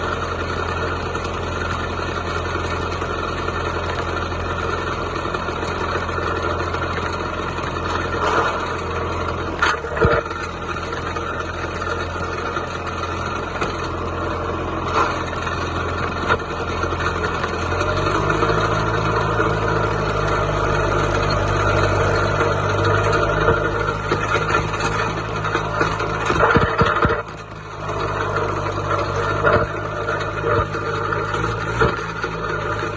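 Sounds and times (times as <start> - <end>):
tractor diesel engine running: 0.0 - 32.9
engine knocks: 7.9 - 32.9.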